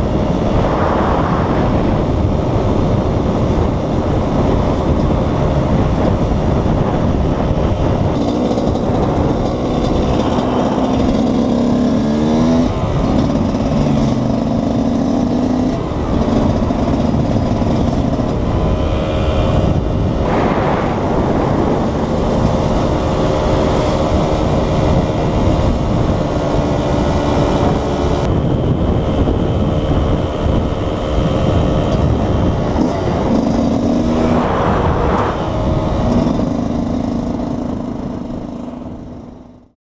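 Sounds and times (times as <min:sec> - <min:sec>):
two-stroke motorcycle engine revving: 0:00.0 - 0:39.8.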